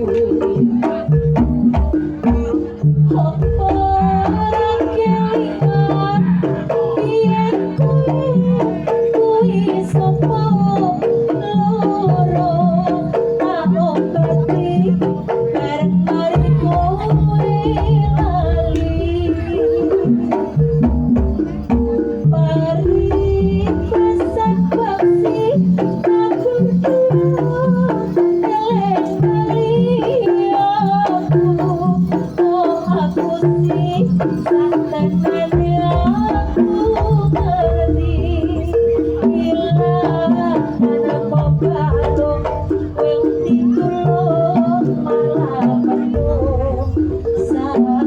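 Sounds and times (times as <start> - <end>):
hand drums beating: 0.0 - 48.0.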